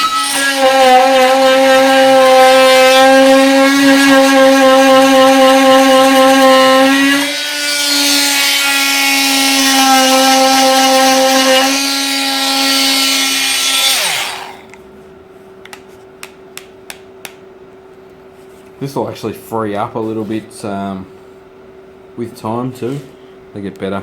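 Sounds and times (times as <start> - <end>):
blade cutting with hissing rasp: 0.0 - 14.7
oscillating multi-tool humming: 0.0 - 14.8.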